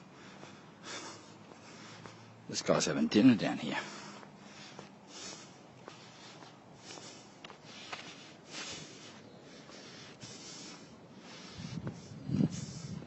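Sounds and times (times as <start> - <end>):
footsteps crunching: 0.0 - 13.0.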